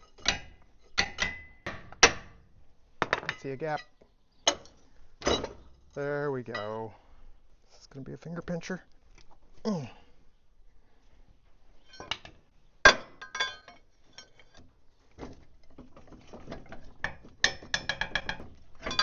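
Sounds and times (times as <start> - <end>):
steel parts clinking together: 0.0 - 1.7, 17.4 - 19.0.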